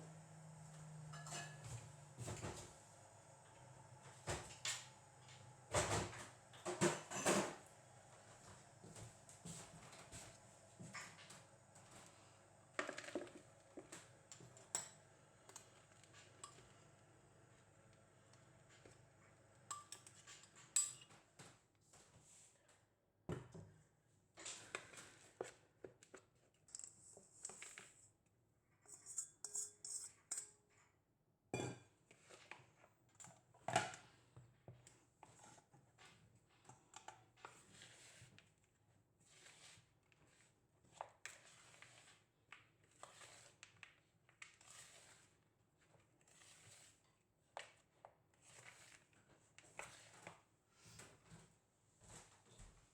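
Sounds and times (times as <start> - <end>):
kitchen utensils and dishes clinking: 1.0 - 2.6, 5.7 - 7.7, 19.7 - 21.2, 28.9 - 30.6.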